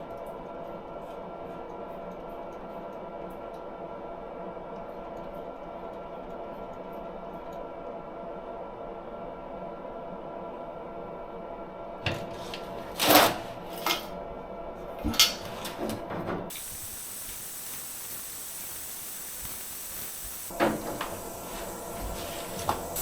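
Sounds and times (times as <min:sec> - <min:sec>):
steady mechanical hum: 0:00.0 - 0:23.0
faint high hiss: 0:16.5 - 0:23.0.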